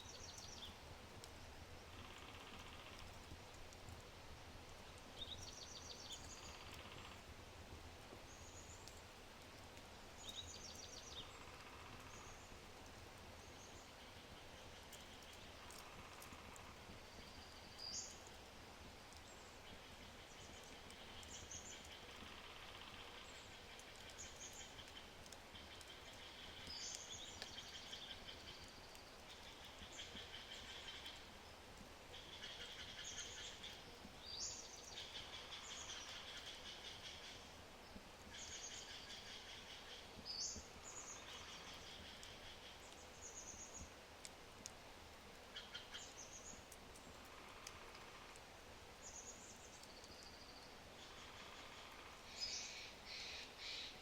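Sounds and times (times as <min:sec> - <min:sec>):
songbirds calling and trilling: 0:00.0 - 0:03.4, 0:04.7 - 0:07.3, 0:10.0 - 0:18.4, 0:19.1 - 0:54.0
wood fire crackling and popping: 0:00.2 - 0:34.3, 0:39.9 - 0:50.4.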